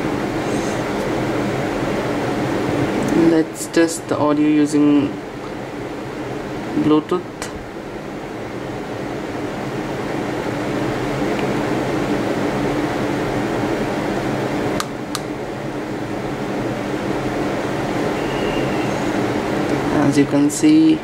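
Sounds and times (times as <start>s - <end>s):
fan-like room hum and hiss: 0.0s - 21.0s.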